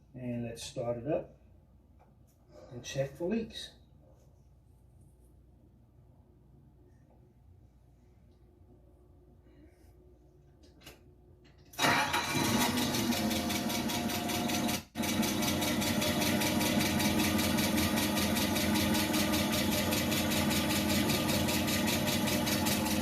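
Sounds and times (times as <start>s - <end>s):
forklift engine starting and idling: 11.7s - 23.0s.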